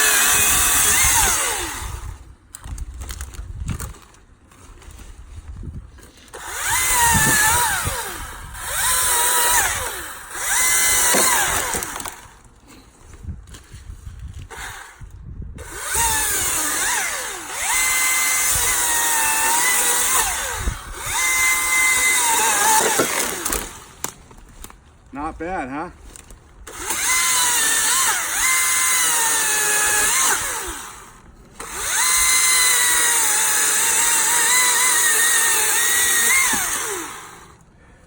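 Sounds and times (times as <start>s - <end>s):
electric chainsaw cutting wood: 0.0s - 2.2s, 6.3s - 12.4s, 14.4s - 24.2s, 26.7s - 37.6s.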